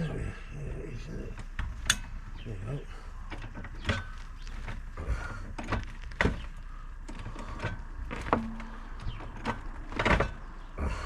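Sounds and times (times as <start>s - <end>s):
sharp clicks and knocks: 1.3s - 2.4s, 3.2s - 10.6s.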